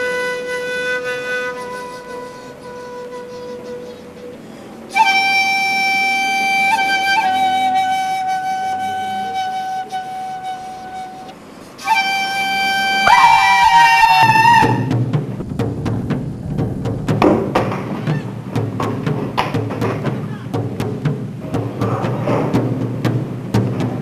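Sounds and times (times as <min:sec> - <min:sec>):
flute playing held notes: 0:00.0 - 0:15.0
second higher flute line: 0:00.0 - 0:15.0
clattering percussion: 0:13.1 - 0:24.0.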